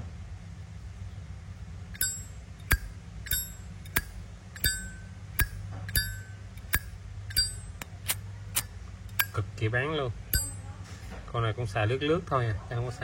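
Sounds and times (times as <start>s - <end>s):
lighter lid opening with bell-like ring: 2.0s - 9.4s, 10.4s - 10.6s.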